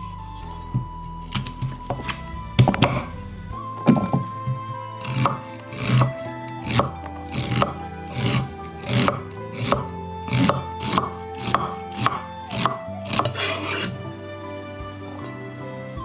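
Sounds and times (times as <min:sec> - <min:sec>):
background music: 0:00.0 - 0:16.0
knife chopping on wooden board: 0:00.8 - 0:03.1, 0:03.8 - 0:14.0.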